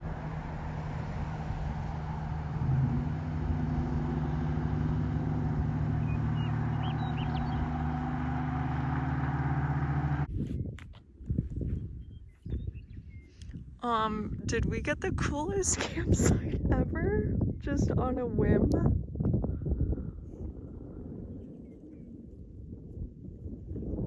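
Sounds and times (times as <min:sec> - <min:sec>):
car engine hum: 0:00.0 - 0:10.3
road noise: 0:00.0 - 0:10.3.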